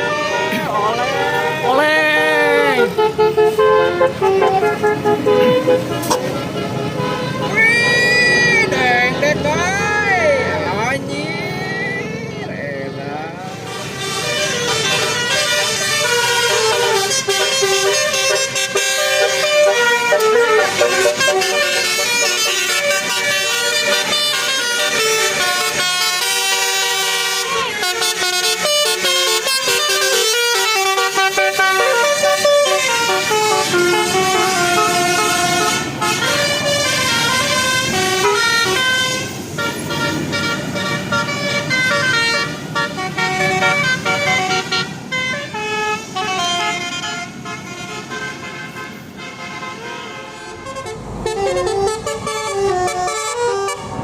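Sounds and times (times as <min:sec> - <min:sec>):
bus musical horn tune: 0:00.0 - 0:10.9, 0:13.5 - 0:54.0
low rumble: 0:50.4 - 0:54.0.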